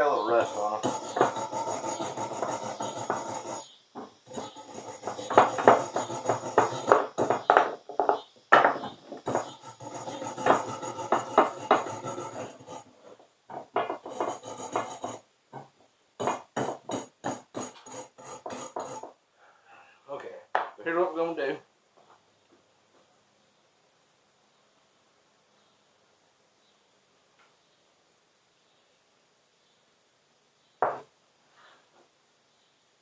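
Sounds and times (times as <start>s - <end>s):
wire brush scrubbing metal: 0.0s - 3.7s, 4.3s - 7.4s, 9.2s - 13.1s, 14.0s - 15.2s, 16.2s - 19.1s.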